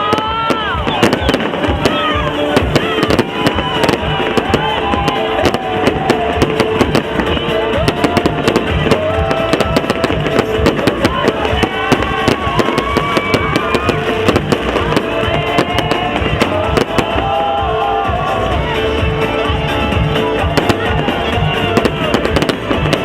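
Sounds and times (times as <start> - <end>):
fireworks bangs and crackles: 0.0 - 23.0
loud music: 0.0 - 23.0.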